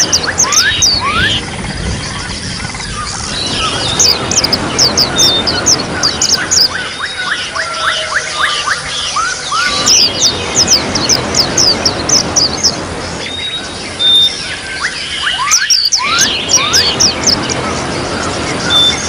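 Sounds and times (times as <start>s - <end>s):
bird song high sweeping chirps: 0.0s - 19.0s
trickling water: 0.0s - 19.0s.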